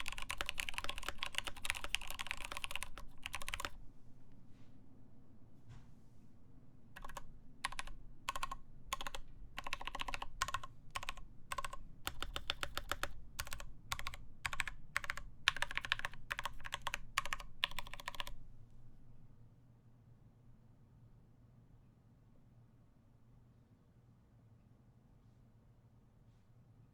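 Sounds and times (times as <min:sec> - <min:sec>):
typing on mechanical keyboard: 0:00.0 - 0:03.8, 0:07.0 - 0:18.4.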